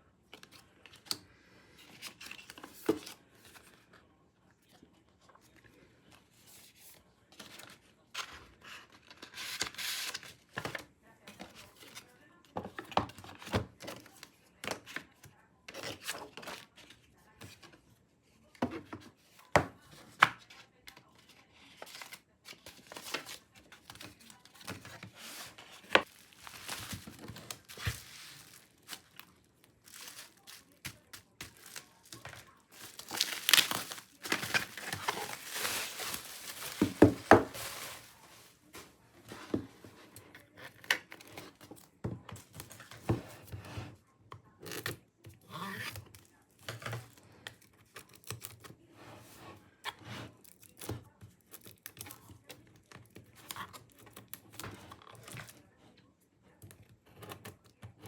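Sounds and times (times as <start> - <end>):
packaging crinkling and tearing: 21.8 - 38.6.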